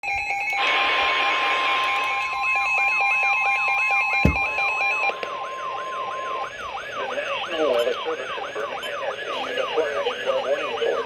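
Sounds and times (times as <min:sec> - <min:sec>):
steady alarm tone: 0:02.9 - 0:05.1
thump: 0:04.2 - 0:04.6.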